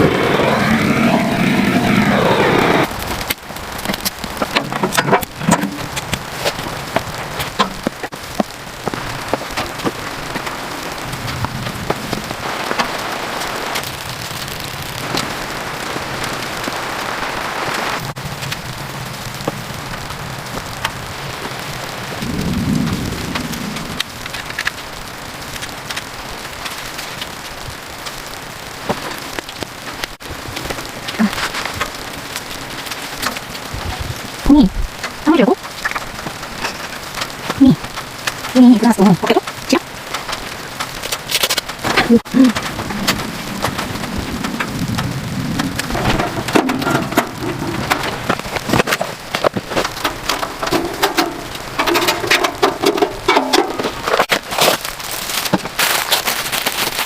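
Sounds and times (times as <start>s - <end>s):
low rumble: 0.0s - 16.7s, 42.0s - 54.3s
rain pattering on a surface: 0.0s - 57.0s.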